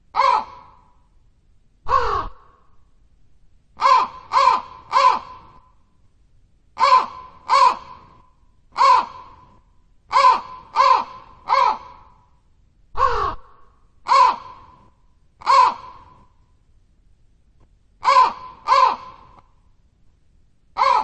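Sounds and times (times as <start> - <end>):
crow cawing: 0.2 - 1.0, 1.9 - 2.7, 3.8 - 5.7, 6.8 - 8.2, 8.8 - 9.5, 10.1 - 12.3, 13.0 - 16.2, 18.0 - 19.5, 20.8 - 21.0.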